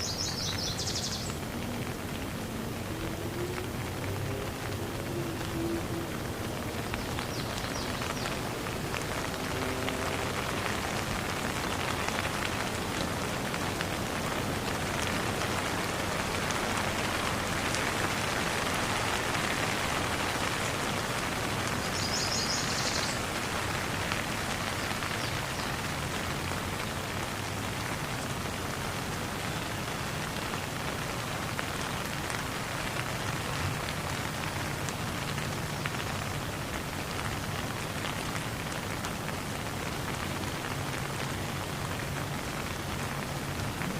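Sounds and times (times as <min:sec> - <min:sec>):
bird chirping: 0:00.0 - 0:01.4
falling water patter and hiss: 0:00.0 - 0:43.9.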